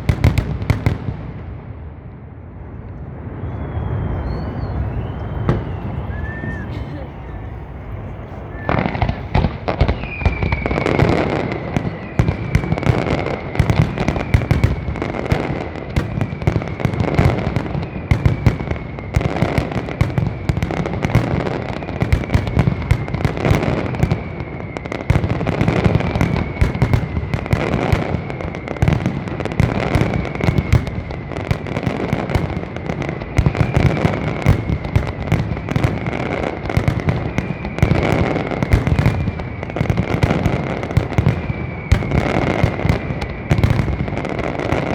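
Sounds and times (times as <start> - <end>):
firework bangs and crackles: 0.0 - 44.9
high falling whistle: 3.2 - 12.6.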